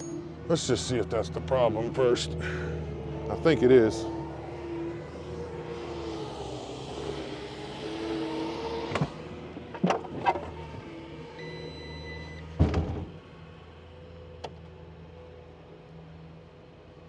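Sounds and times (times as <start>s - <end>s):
heavy clunk: 12.6s - 13.2s.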